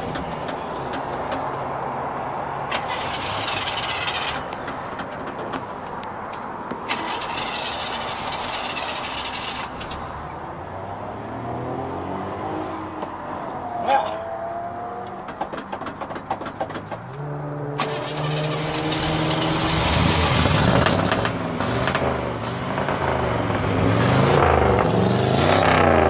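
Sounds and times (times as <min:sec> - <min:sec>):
pickup engine running and revving: 0:17.2 - 0:26.0.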